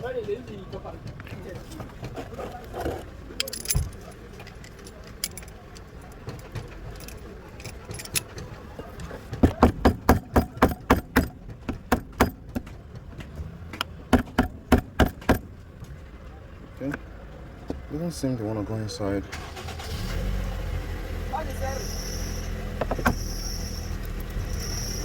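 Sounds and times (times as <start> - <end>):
sharp metallic knocks: 9.2 - 15.6.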